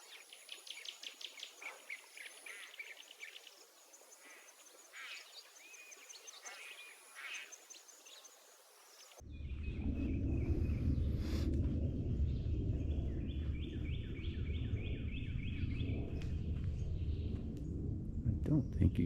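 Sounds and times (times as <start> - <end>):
steady low rumble: 9.2 - 19.0
birds chirping and whistling: 12.3 - 17.4.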